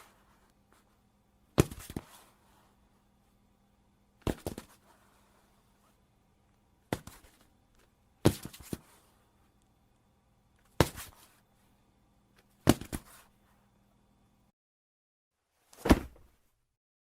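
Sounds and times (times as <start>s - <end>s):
body falling heavy thuds: 15.7s - 16.4s.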